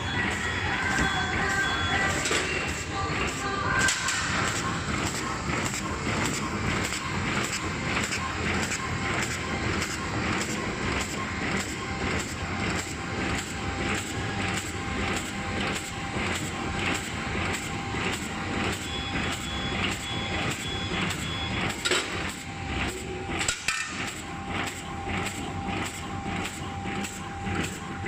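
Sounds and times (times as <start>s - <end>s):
short high beeps: 0.0s - 2.9s
bag-making machine clattering: 0.0s - 28.0s.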